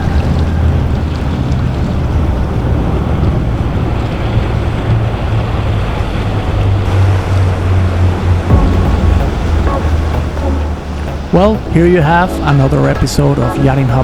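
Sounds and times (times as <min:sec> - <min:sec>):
wind buffeting microphone: 0:00.0 - 0:13.1
boat engines droning: 0:00.0 - 0:14.0
waves washing: 0:00.0 - 0:14.0.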